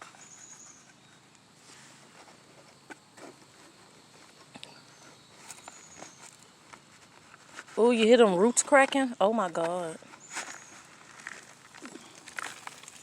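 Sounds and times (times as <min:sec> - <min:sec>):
hands scraping through soil: 0:00.0 - 0:13.0
roots snapping: 0:10.1 - 0:13.0.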